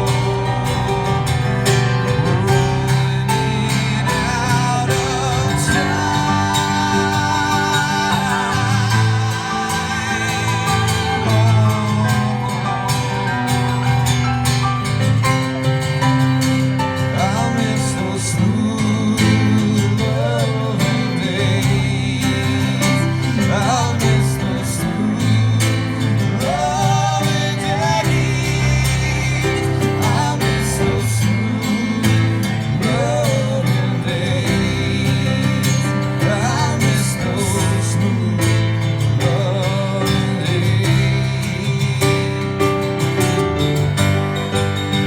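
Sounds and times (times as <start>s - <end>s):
lead guitar line bending pitch: 0.0s - 17.1s.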